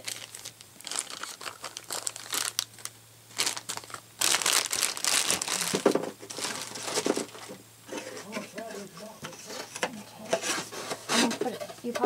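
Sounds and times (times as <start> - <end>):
packaging crinkling: 0.0 - 7.6.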